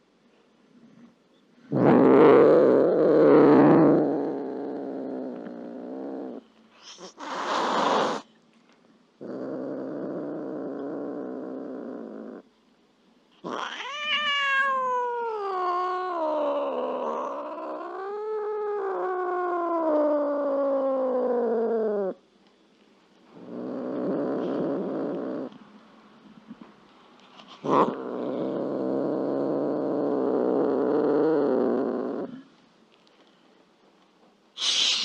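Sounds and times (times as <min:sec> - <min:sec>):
cat growling: 0:01.7 - 0:08.3, 0:09.2 - 0:12.5, 0:13.4 - 0:22.2, 0:23.3 - 0:25.6, 0:27.4 - 0:32.5
cat hissing: 0:05.6 - 0:08.3, 0:13.4 - 0:19.6, 0:34.6 - 0:35.0
cat yowling: 0:13.4 - 0:22.2.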